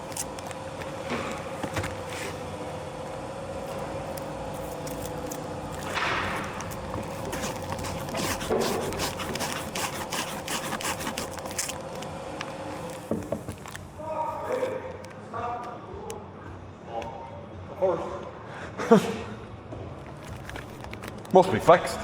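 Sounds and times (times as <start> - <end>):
wooden pieces scraping and knocking: 3.6 - 13.8, 20.0 - 21.5.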